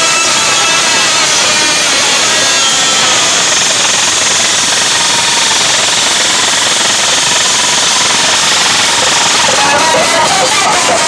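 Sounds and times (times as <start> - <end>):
distorted loud music playback: 8.0 - 11.0.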